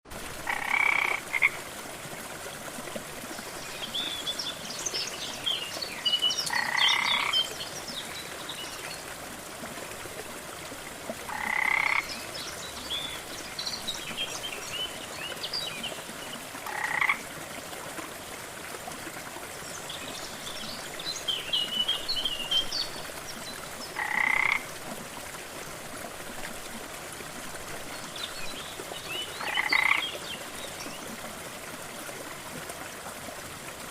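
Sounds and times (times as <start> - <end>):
frog croaking: 0.4 - 1.6, 6.5 - 7.4, 11.3 - 12.1, 16.6 - 17.2, 24.0 - 24.6, 29.4 - 30.0
frogs chirping calls: 0.4 - 1.6, 6.5 - 7.4, 11.3 - 12.1, 16.7 - 17.2, 24.0 - 24.7, 29.4 - 30.0.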